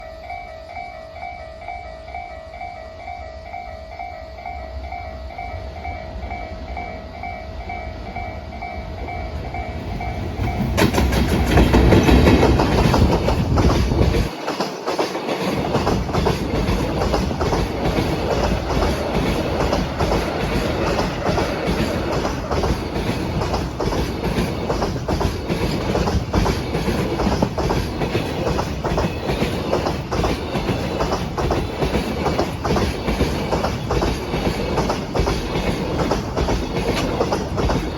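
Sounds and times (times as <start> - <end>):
electric locomotive passing: 0.0 - 37.9
train wheels clickety-clack: 8.8 - 37.9.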